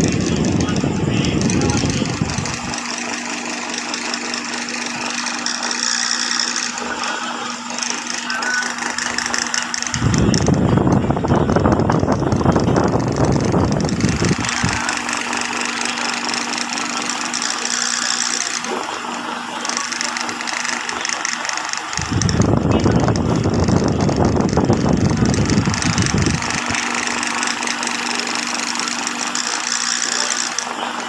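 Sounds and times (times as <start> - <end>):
sewing machine running: 0.0 - 31.0.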